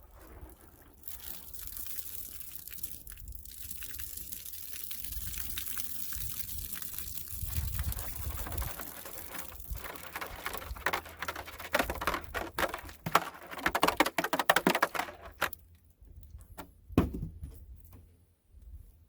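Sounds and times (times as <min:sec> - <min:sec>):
hands rustling in plastic jugs: 0:07.4 - 0:15.6
thump: 0:16.6 - 0:17.6.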